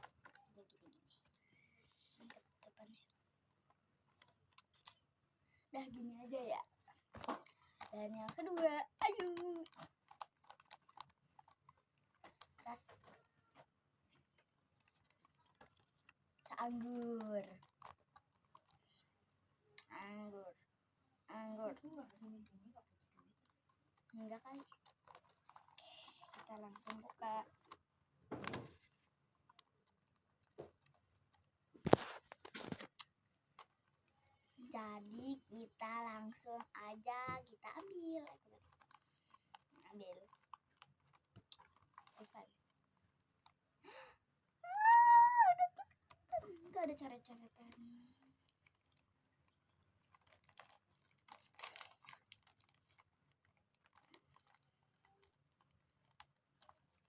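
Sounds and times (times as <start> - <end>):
hands rustling toy wrapping: 0.0 - 19.4, 21.3 - 44.0, 44.7 - 57.0
paper wrapper crinkling: 28.4 - 33.0, 37.6 - 43.6, 48.4 - 57.0.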